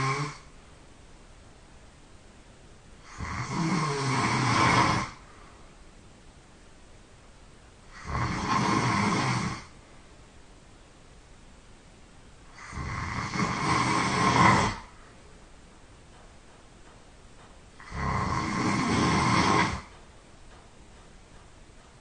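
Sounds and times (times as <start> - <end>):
person snoring loudly: 0.0 - 0.5, 3.0 - 5.2, 7.9 - 9.8, 12.5 - 14.9, 17.8 - 19.9
quiet breaths: 0.0 - 22.0.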